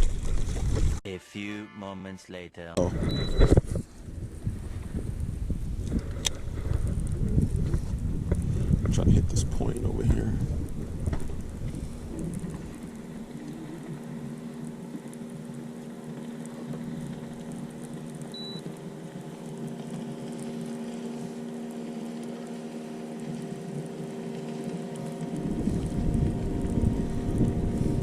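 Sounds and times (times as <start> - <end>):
short high beep: 1.1 - 2.3, 3.0 - 3.5, 18.4 - 18.6
electric motor humming: 10.8 - 28.0.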